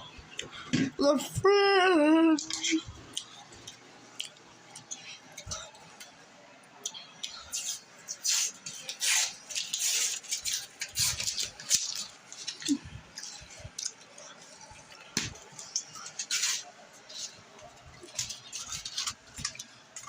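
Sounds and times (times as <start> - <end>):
food packaging rustling: 7.6 - 20.0.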